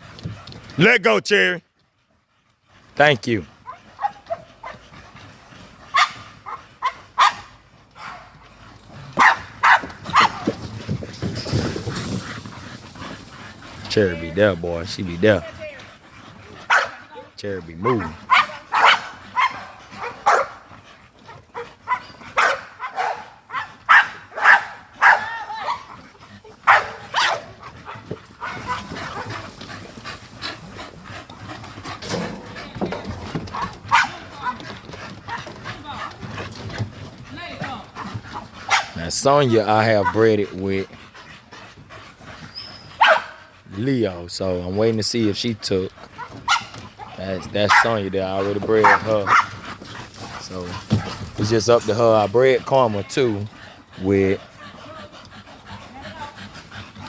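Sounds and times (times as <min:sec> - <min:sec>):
dogs barking: 0:03.6 - 0:05.0, 0:05.8 - 0:08.4, 0:09.0 - 0:10.6, 0:16.4 - 0:29.6, 0:31.5 - 0:36.7, 0:37.4 - 0:40.4, 0:42.8 - 0:43.6, 0:46.0 - 0:53.5.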